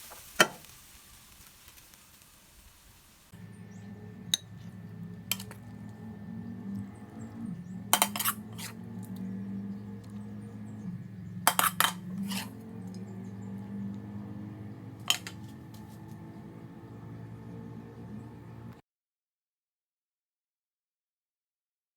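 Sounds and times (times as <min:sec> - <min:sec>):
steady low hum: 0:02.8 - 0:18.8
metal utensils clinking dishes: 0:05.3 - 0:05.6, 0:08.0 - 0:08.8, 0:11.5 - 0:13.0, 0:15.1 - 0:15.6.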